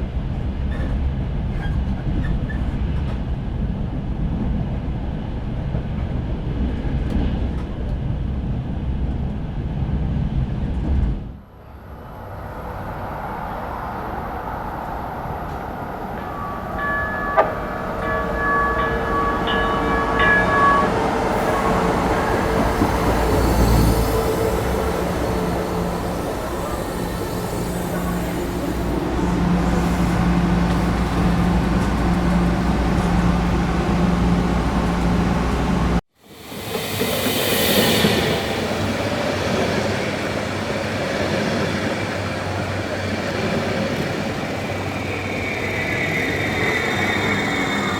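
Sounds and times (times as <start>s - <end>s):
moving train rumble: 0.0s - 47.9s
train horn blasts: 16.2s - 35.2s
bright hiss: 36.2s - 40.1s.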